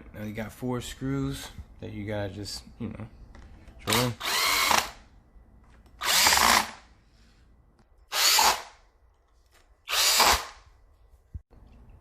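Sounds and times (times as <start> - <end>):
power drill driving screws: 3.9 - 5.0, 6.0 - 6.8, 8.1 - 8.7, 9.9 - 10.6.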